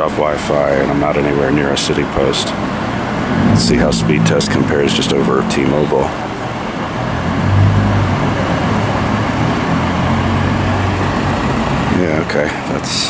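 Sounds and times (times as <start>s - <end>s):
motor vehicles passing: 2.2s - 12.0s.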